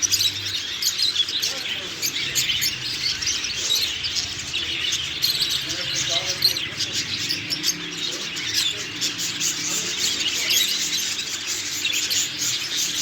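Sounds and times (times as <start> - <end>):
faint voices: 0.0 - 13.0
small birds chirping and twittering: 0.0 - 13.0.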